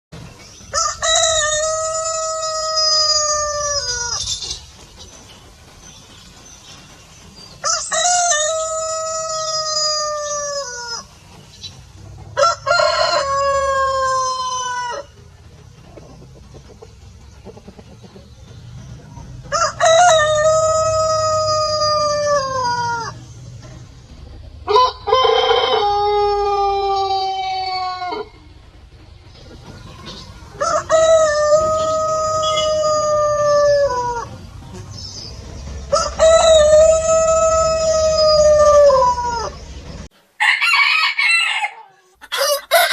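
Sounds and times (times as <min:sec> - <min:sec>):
roosters crowing: 0:00.5 - 0:04.7, 0:07.6 - 0:15.4, 0:19.0 - 0:23.7, 0:24.6 - 0:28.5, 0:29.6 - 0:34.4, 0:35.8 - 0:39.8, 0:40.4 - 0:42.9.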